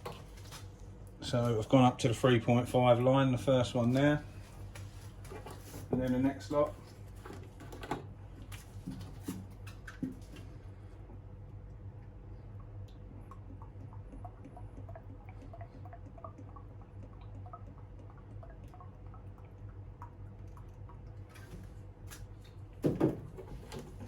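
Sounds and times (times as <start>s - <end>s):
steady low hum: 0.0s - 24.0s
liquid pouring and dripping into cup: 11.5s - 22.3s
loud knock of object set down: 22.8s - 23.3s.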